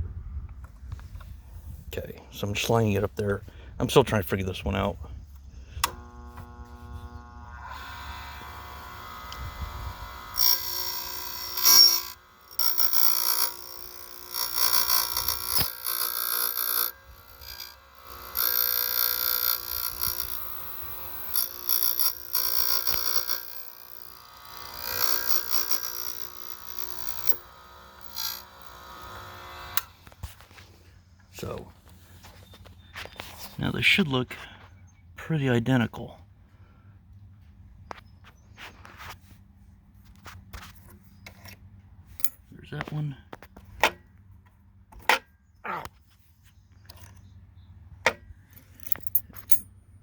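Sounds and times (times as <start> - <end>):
motor humming: 5.7 - 30.2
cutter wheel cutting metal key: 5.8 - 30.2, 48.9 - 49.6.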